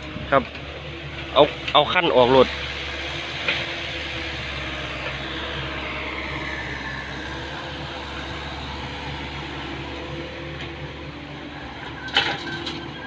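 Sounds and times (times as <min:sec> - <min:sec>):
diesel truck engine pulling away: 0:00.0 - 0:13.0.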